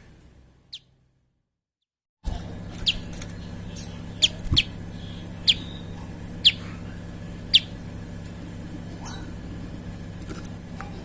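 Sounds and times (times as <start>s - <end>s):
bird chirping: 0.7s - 1.0s, 2.7s - 7.8s.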